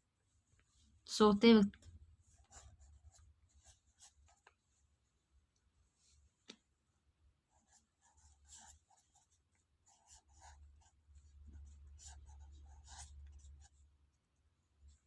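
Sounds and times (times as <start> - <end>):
pen scratching on paper: 2.2 - 4.5, 7.5 - 13.9.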